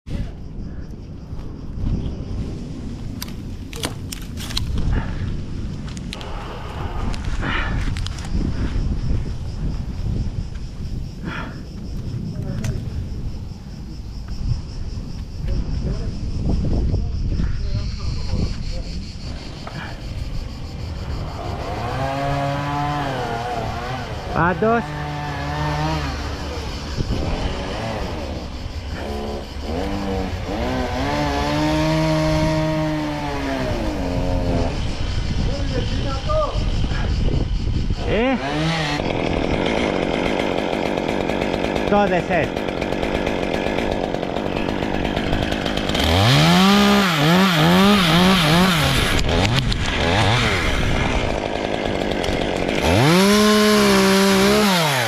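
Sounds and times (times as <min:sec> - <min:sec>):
chainsaw engine revving: 0:19.4 - 0:35.0, 0:38.0 - 0:55.0.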